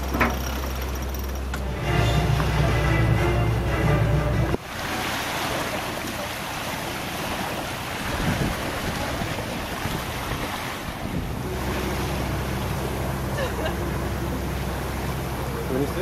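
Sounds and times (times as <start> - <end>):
water washing around a boat: 0.0 - 16.0
wind buffeting the microphone: 7.3 - 11.5.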